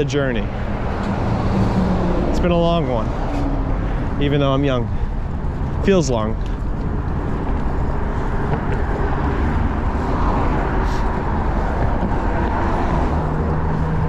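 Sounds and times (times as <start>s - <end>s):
wind and road noise of bicycle: 0.0s - 2.4s, 3.1s - 14.0s.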